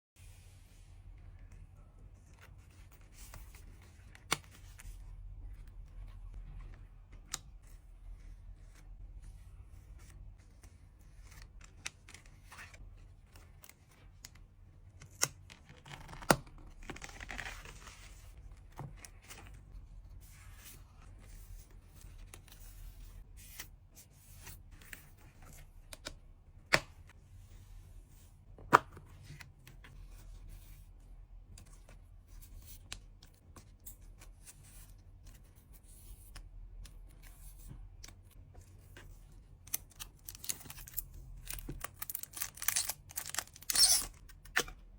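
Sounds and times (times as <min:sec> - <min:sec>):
packaging tearing and rustling: 0:39.8 - 0:44.2.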